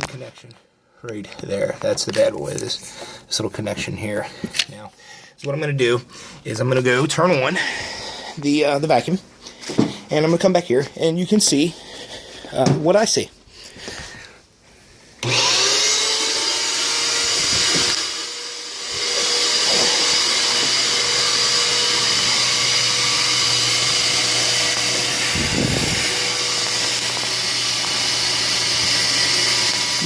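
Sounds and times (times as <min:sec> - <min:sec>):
shop vac motor humming and whining: 0:15.2 - 0:30.0.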